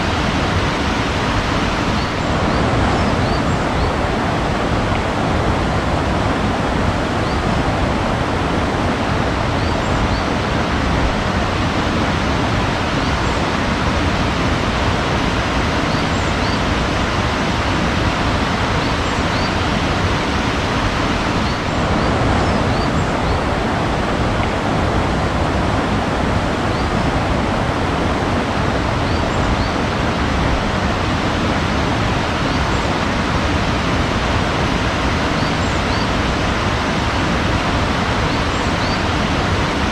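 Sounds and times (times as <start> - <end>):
rushing water: 0.0 - 39.9
birds chirping: 0.1 - 5.2, 15.6 - 23.7, 32.2 - 39.9.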